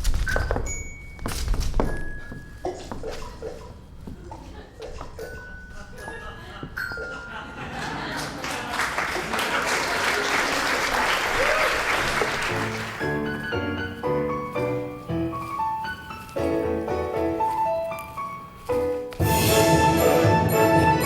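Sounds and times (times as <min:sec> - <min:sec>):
audience applauding: 0:07.8 - 0:13.4
solo piano tune: 0:12.5 - 0:19.1
full music: 0:18.8 - 0:21.0.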